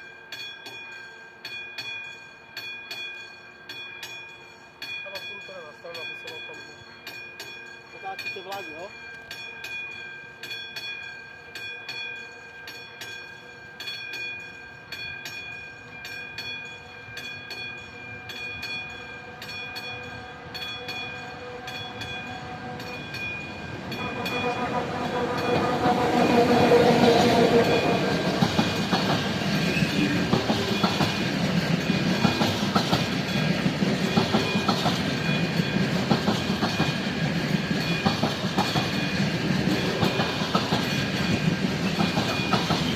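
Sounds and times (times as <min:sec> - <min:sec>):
level-crossing warning bell: 0:00.0 - 0:42.9
train wheels clattering: 0:17.2 - 0:42.9.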